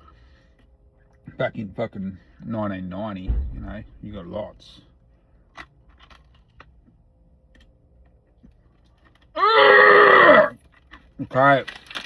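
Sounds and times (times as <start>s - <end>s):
man groaning: 9.4s - 10.5s.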